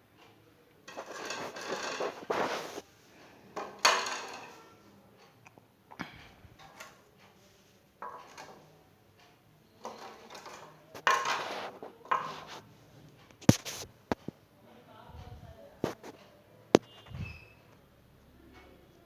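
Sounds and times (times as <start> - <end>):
plastic trays knocking and clattering: 0.9 - 2.8, 3.5 - 4.6, 8.0 - 8.6, 9.8 - 12.5.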